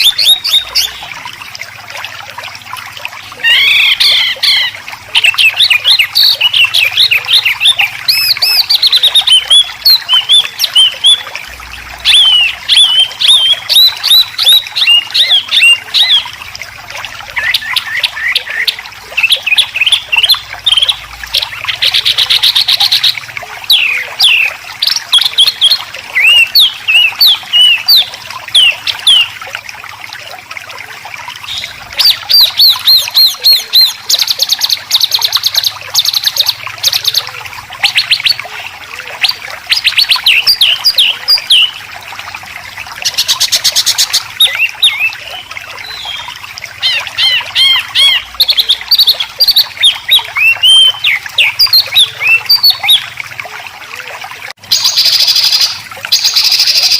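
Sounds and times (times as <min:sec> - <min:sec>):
birdsong whistles and chatter: 0:03.3 - 0:11.4, 0:12.0 - 0:16.4, 0:17.2 - 0:29.5, 0:31.4 - 0:41.9, 0:43.0 - 0:53.1.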